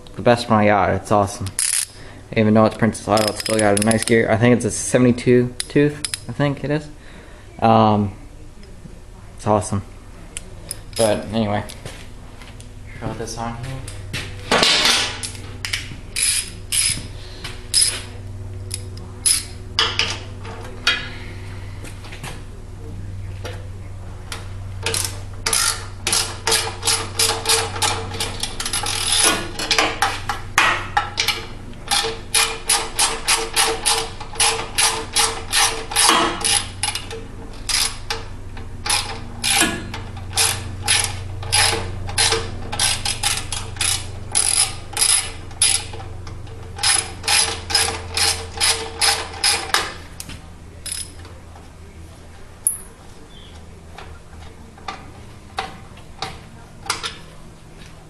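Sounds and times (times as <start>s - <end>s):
ratchet wrench clicking: 1.6s - 2.0s, 3.1s - 4.2s, 5.6s - 6.3s, 15.2s - 17.0s, 17.7s - 18.0s, 18.7s - 19.6s, 24.8s - 30.2s, 31.2s - 38.2s, 38.8s - 46.0s, 46.8s - 49.8s, 50.8s - 51.2s.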